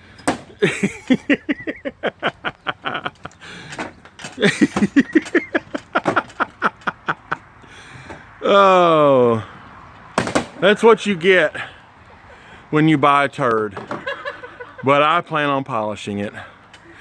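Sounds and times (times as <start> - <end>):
person laughing: 0.6 - 3.6, 4.4 - 7.5.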